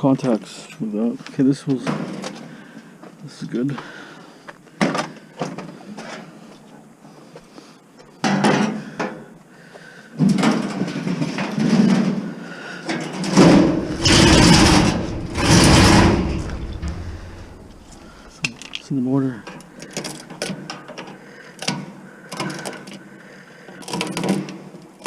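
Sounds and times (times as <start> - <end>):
metal and plastic parts clattering: 12.9 - 18.9.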